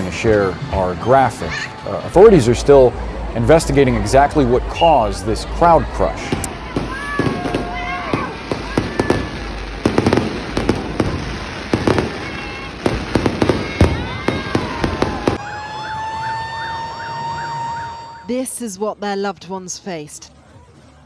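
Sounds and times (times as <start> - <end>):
crowd shouting: 5.7 - 18.2
sharp bangs and cracks: 6.3 - 15.4
emergency vehicle siren: 13.4 - 18.3.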